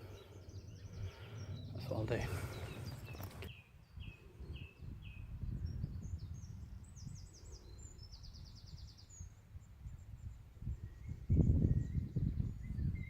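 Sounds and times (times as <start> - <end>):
steady low rumble: 0.0 - 3.5
small songbirds singing: 0.0 - 13.0.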